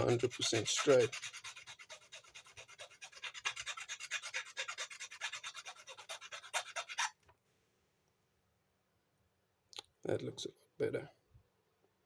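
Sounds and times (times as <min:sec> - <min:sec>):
hand file rasping: 0:00.0 - 0:07.2.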